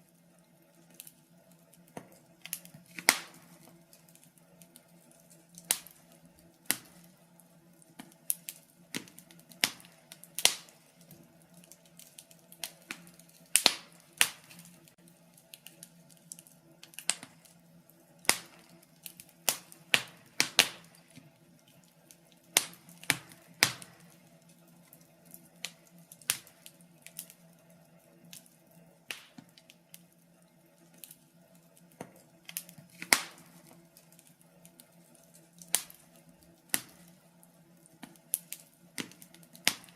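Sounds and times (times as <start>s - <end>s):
wood fire crackling and popping: 0.0s - 39.9s.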